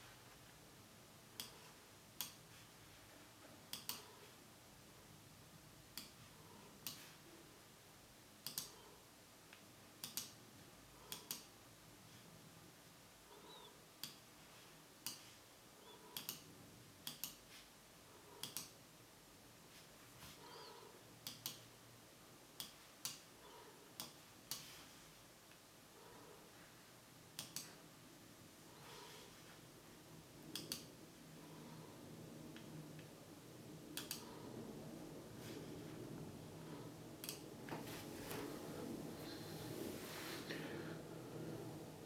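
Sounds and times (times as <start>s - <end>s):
sharp short clicks: 30.5s - 30.9s.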